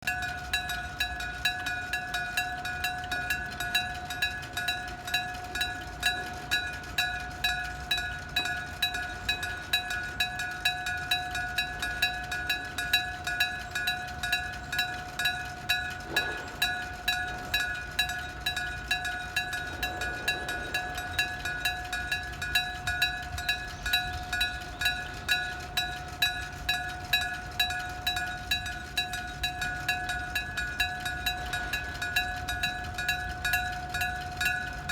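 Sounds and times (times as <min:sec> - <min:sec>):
railroad crossing bell ringing: 0:00.0 - 0:34.9.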